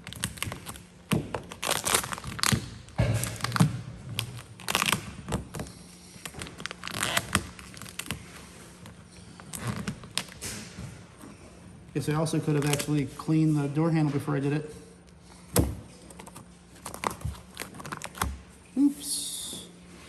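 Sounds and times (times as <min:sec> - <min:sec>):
vinyl film crinkling and crackling: 0:00.0 - 0:03.6, 0:04.2 - 0:05.1, 0:06.2 - 0:08.2, 0:16.0 - 0:18.3.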